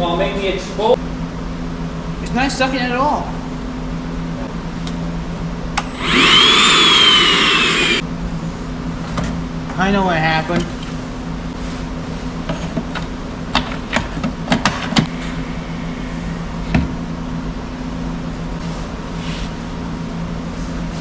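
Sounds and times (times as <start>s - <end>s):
motor humming: 5.8s - 8.0s.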